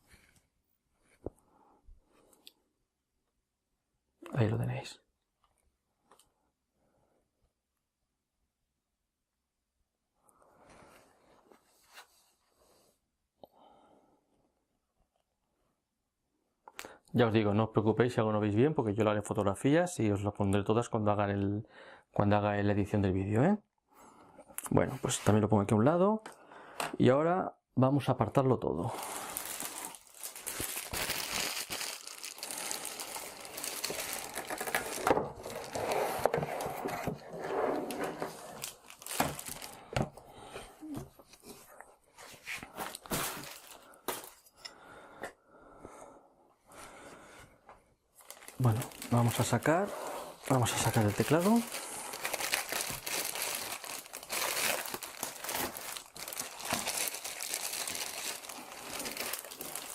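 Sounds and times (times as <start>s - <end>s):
packaging rustling and crinkling: 28.9s - 40.2s, 41.3s - 44.5s, 48.2s - 59.9s.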